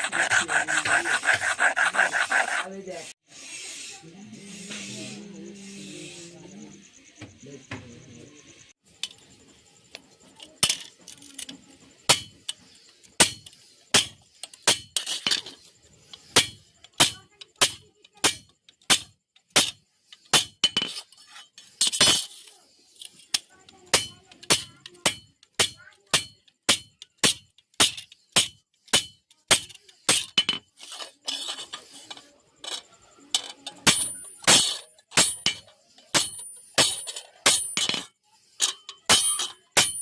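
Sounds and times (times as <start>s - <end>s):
hammer striking steel: 38.7s - 40.0s.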